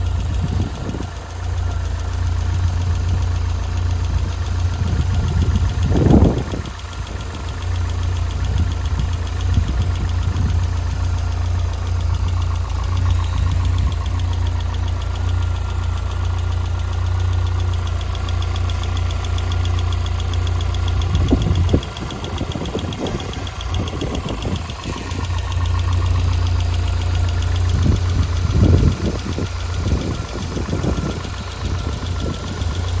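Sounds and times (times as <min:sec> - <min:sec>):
car engine idling with ticking: 0:00.0 - 0:33.0.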